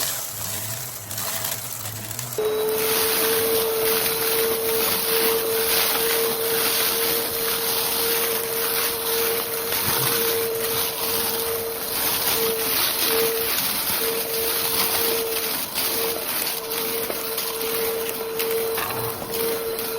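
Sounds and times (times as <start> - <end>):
vacuum cleaner running: 0.0 - 19.9.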